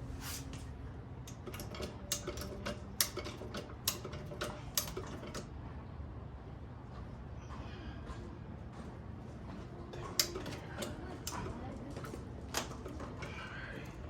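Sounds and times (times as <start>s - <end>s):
lug wrench metal clicks and clinks: 1.3s - 5.5s.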